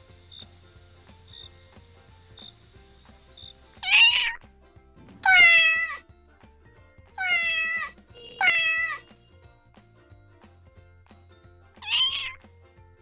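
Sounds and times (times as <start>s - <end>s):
cat meowing: 3.8s - 4.4s, 5.2s - 6.0s, 7.2s - 9.1s, 11.8s - 12.4s.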